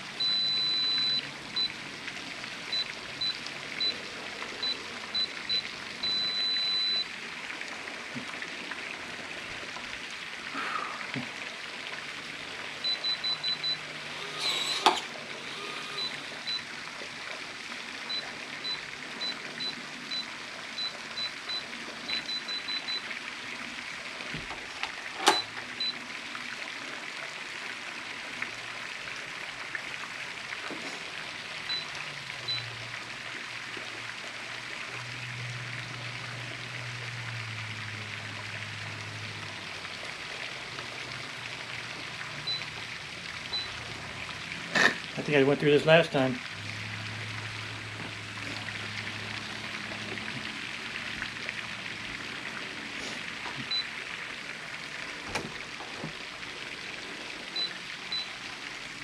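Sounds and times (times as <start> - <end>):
keypad door lock beeps: 0.2 - 1.7, 2.7 - 4.0, 4.6 - 7.0, 12.8 - 13.8, 15.8 - 16.7, 18.1 - 23.0, 25.2 - 26.0, 42.5 - 42.7, 43.5 - 43.8, 53.7 - 53.9
door lock click: 24.8 - 25.5.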